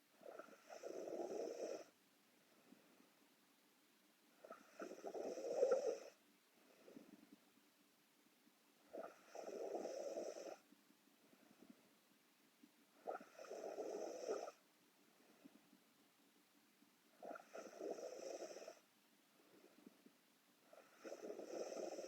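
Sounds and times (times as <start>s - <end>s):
woman snoring: 0.2s - 1.9s, 4.5s - 6.2s, 9.0s - 10.6s, 13.2s - 14.6s, 17.3s - 18.8s, 20.8s - 22.0s.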